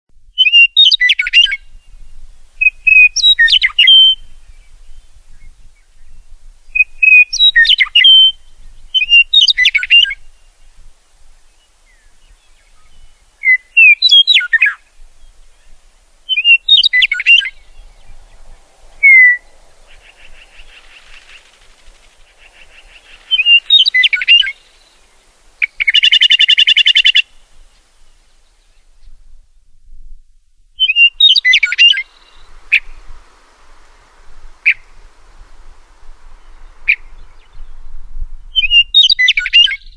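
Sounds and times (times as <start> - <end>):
meadowlark singing: 0.3 - 29.4, 30.8 - 39.9
buzzy bird chatter: 19.9 - 24.8.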